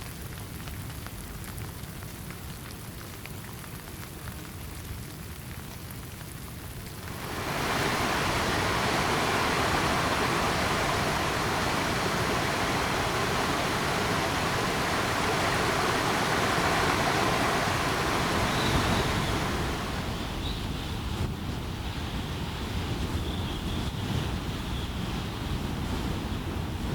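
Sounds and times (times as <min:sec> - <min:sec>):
rain on a surface: 0:00.0 - 0:26.9
fast-flowing water rushing: 0:07.0 - 0:20.6.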